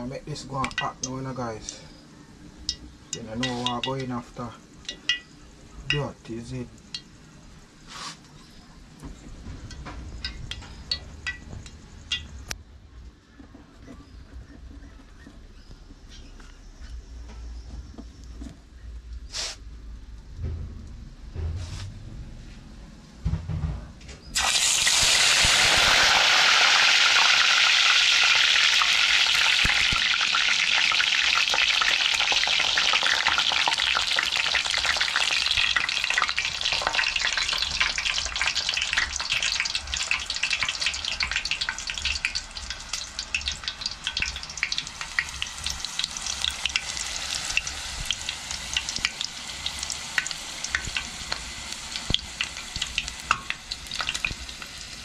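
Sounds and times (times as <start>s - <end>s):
food frying in hot oil: 24.3s - 55.0s.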